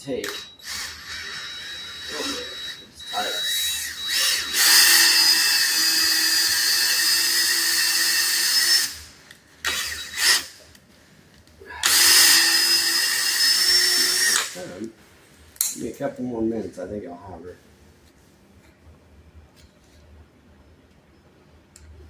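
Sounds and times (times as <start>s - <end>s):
power drill running: 0.3s - 9.1s, 9.7s - 10.6s, 11.8s - 14.6s.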